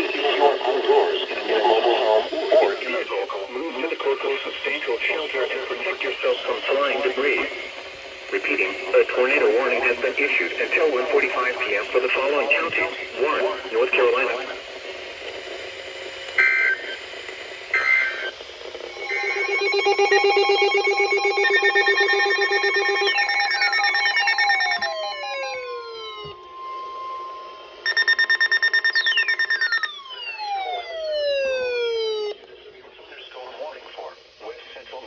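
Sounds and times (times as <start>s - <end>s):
short electronic bursts: 18.9s - 32.3s
electronic alarm tones: 18.9s - 32.4s
pulsing steady tones: 18.9s - 32.4s
falling whistles: 19.0s - 32.3s.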